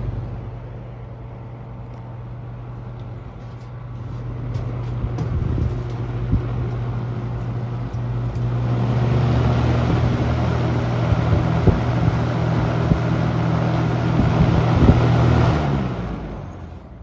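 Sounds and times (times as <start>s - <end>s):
box fan running: 0.0s - 17.0s.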